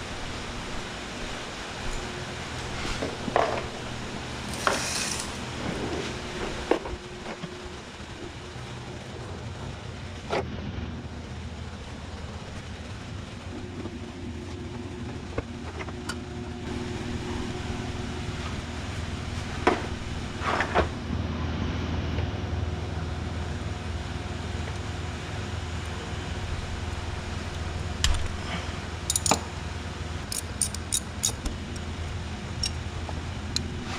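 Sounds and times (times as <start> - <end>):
steady low hum: 0.0 - 33.9
metallic clanks of hand tools: 29.1 - 29.5, 30.3 - 31.5.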